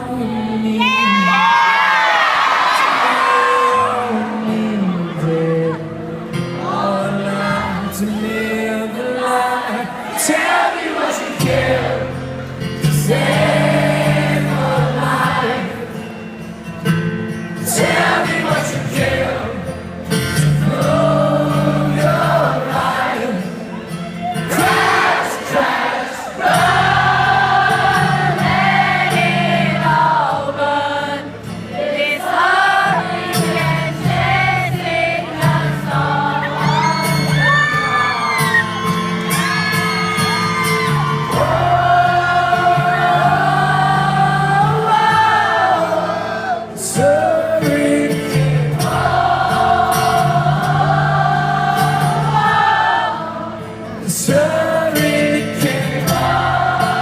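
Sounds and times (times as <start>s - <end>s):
wordless singing: 6.6s - 16.1s, 17.6s - 23.8s, 24.5s - 37.3s, 41.4s - 57.0s
live rock band: 33.0s - 45.6s.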